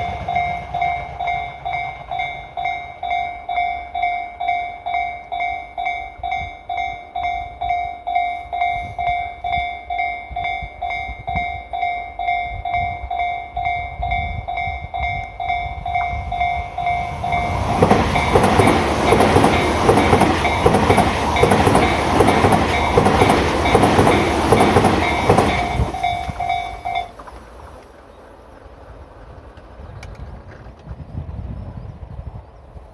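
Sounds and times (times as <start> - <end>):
level crossing warning bell: 0.0 - 27.2
train passing with rumble: 0.0 - 32.9
wheels clattering over rail joints: 15.4 - 31.0.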